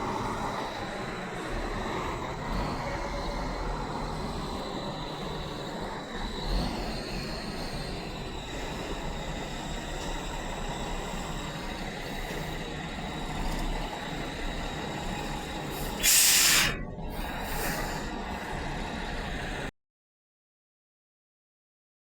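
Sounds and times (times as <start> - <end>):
steady vehicle noise: 0.0 - 19.7
air brakes hissing: 15.7 - 18.5.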